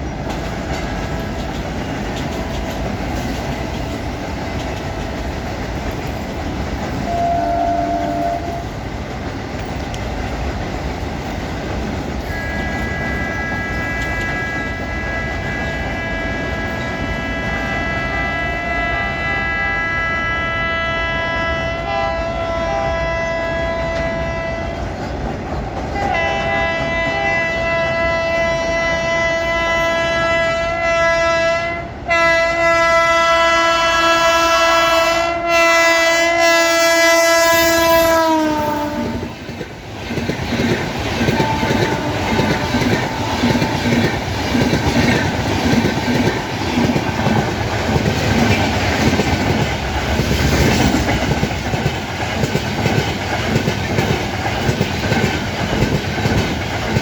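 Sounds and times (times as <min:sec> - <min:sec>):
train wheels clattering on rails: 0:00.0 - 0:19.2, 0:23.0 - 0:30.6, 0:37.6 - 0:57.0
train horn chord: 0:07.0 - 0:08.8, 0:12.2 - 0:24.9, 0:26.0 - 0:39.3, 0:41.2 - 0:44.0.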